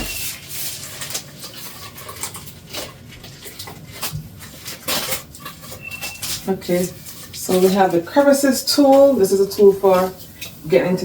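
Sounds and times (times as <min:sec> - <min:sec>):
packaging rustling: 0:00.0 - 0:08.0.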